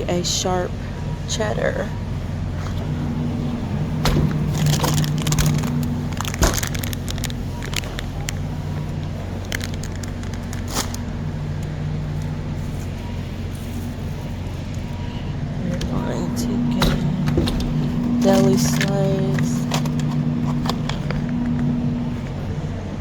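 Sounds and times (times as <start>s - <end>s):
refrigerator low hum: 0.0s - 23.0s
crackles and clicks: 4.3s - 12.3s.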